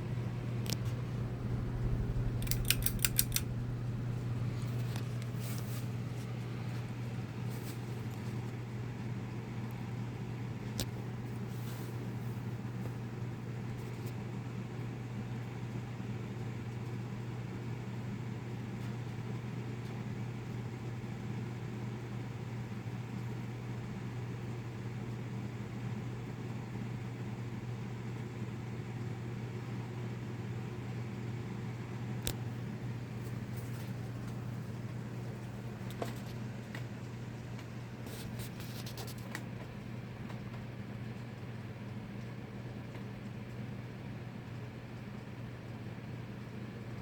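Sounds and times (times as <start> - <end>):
ceiling fan motor hum: 0.0 - 47.0
small metallic clicks: 1.5 - 3.8.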